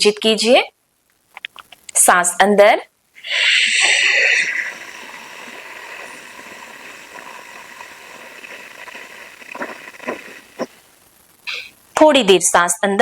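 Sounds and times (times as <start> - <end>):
breath hissing through constricted throat: 3.2 - 11.8.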